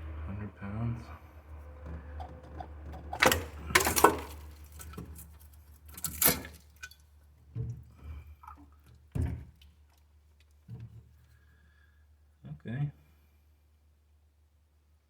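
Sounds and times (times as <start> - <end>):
metal clanking: 1.1 - 6.7.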